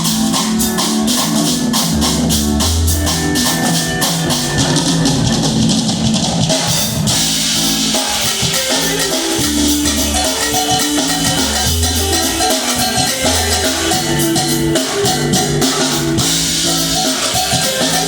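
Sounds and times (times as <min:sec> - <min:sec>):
drums and percussion: 0:00.0 - 0:18.0
live band instrumental groove: 0:00.0 - 0:18.0.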